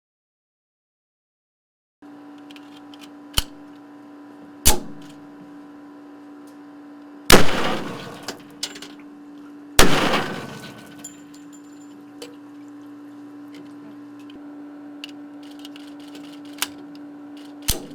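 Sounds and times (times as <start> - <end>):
steady hum: 7.2 - 8.8, 9.6 - 17.9
gunshots: 7.3 - 8.4, 9.8 - 11.1, 17.7 - 17.9.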